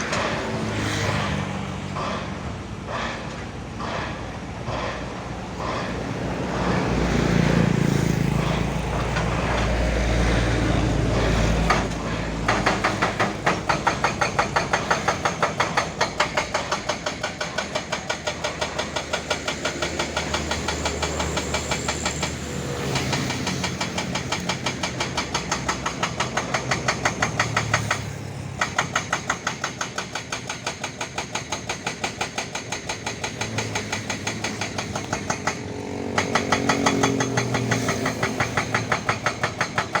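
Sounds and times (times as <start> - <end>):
diesel engine running hard: 4.7 - 13.7, 18.7 - 28.6, 33.3 - 40.0
hydraulic breaker hammering: 8.2 - 40.0.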